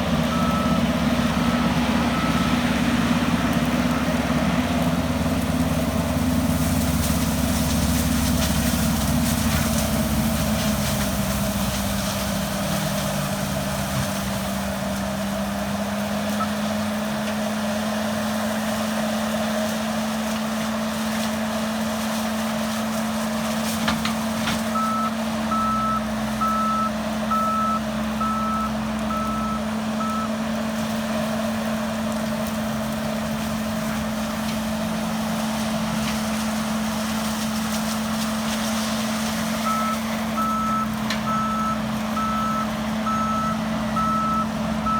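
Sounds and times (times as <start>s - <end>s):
reversing alarm beeping: 0.3s - 2.7s, 24.7s - 30.3s, 39.6s - 44.9s.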